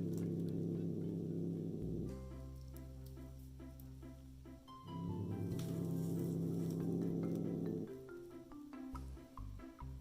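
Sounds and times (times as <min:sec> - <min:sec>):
bouncy music with bass pulse: 0:04.8 - 0:08.4.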